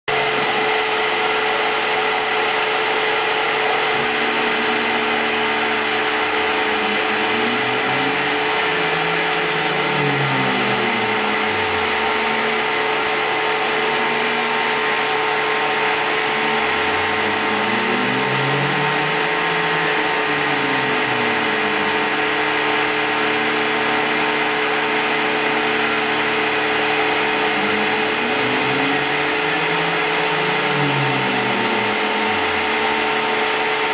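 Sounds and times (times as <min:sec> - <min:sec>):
milling machine running: 0:00.1 - 0:33.9
motor whines gliding up and down: 0:00.1 - 0:33.9.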